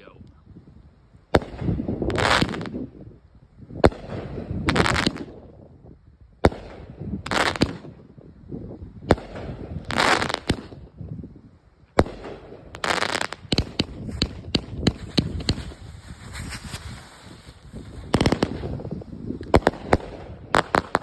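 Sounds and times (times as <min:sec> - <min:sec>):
rapid firework pops: 0:01.3 - 0:02.8, 0:03.8 - 0:05.4, 0:06.4 - 0:07.9, 0:09.0 - 0:10.8, 0:11.9 - 0:16.9, 0:18.0 - 0:21.0
firework launch thumps: 0:12.0 - 0:21.0
firework hissing crackling break: 0:12.3 - 0:21.0.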